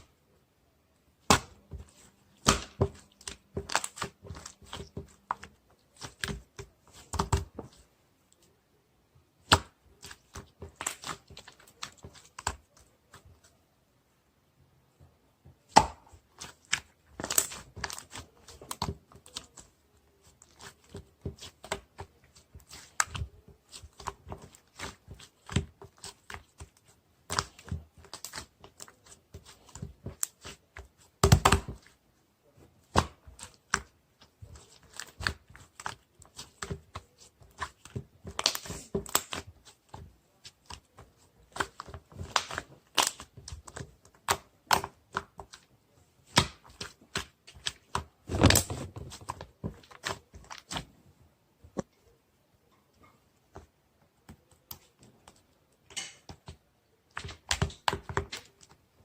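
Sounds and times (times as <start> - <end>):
material crinkling and tearing: 47.5 - 50.8.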